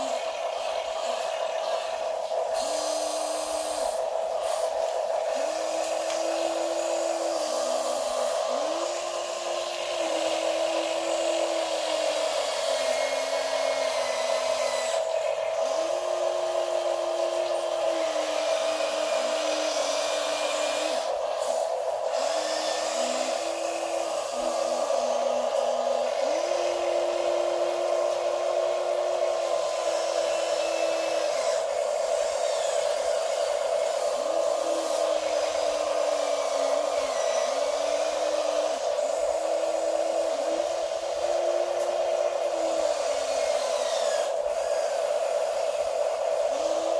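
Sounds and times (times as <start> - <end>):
small electric motors whining: 0.0 - 46.9.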